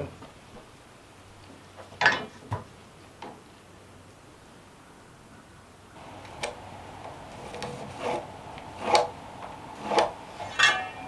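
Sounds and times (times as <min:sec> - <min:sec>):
hand tools knocking against wood: 0:06.0 - 0:11.0
low rubbing hiss: 0:06.0 - 0:11.0.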